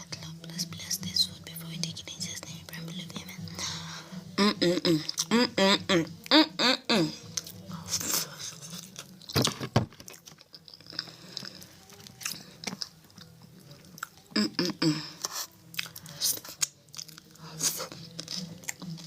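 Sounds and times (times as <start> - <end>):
person biting and chewing food: 7.3 - 19.0.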